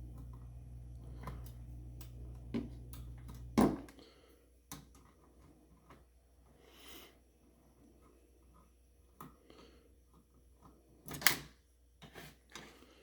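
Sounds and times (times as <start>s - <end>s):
low steady hum: 0.0s - 4.3s.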